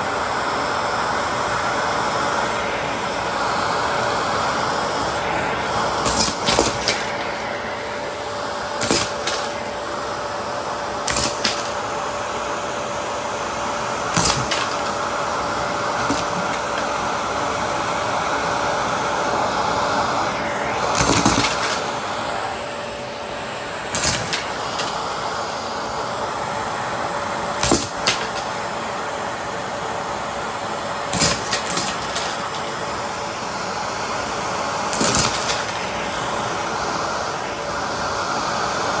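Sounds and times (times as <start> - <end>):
vacuum cleaner running: 0.0 - 39.0
buttons clattering in vacuum: 5.0 - 10.1, 10.9 - 12.1, 13.8 - 17.6, 20.7 - 22.3, 23.9 - 25.3, 27.6 - 28.7, 31.1 - 33.0, 34.9 - 37.0.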